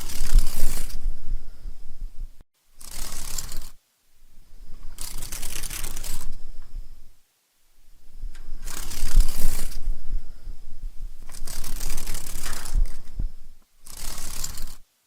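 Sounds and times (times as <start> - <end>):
dragonfly wings buzzing: 0.0 - 1.3, 2.8 - 7.1, 7.8 - 14.9
low rumble: 0.0 - 2.4.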